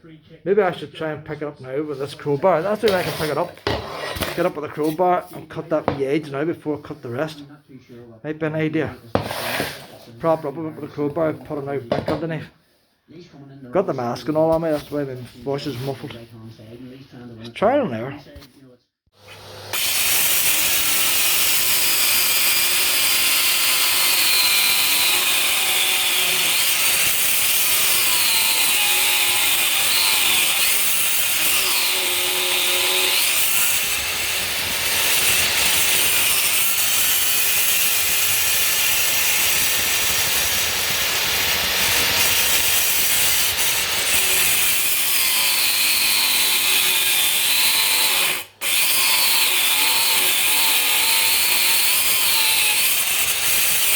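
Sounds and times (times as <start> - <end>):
electric saw cutting stone: 19.2 - 53.9.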